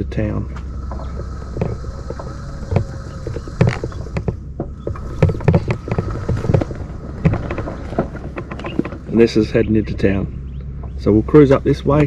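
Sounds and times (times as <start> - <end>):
wheelchair motor hum and whine: 0.0 - 12.0
wheelchair clicks and rattles: 0.9 - 9.2.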